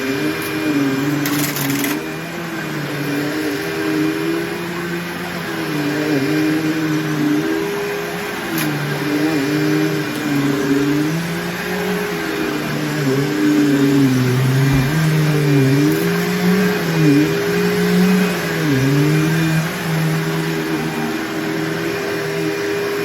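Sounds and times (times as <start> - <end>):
upright vacuum cleaner running: 0.0 - 23.0.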